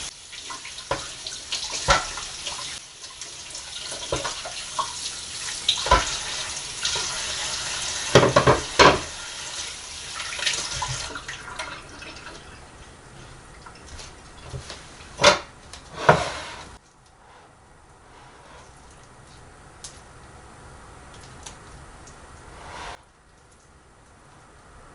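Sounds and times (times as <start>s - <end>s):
tap running into sink: 0.5s - 2.7s, 3.8s - 5.0s, 5.6s - 9.2s.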